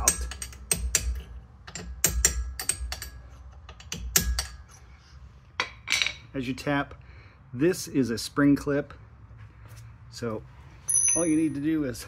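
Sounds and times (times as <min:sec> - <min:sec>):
hammer tapping metal punch: 0:00.0 - 0:04.7.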